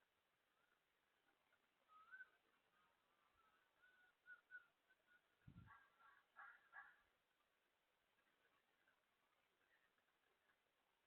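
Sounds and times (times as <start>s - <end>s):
faint bird calls: 0.0s - 7.2s.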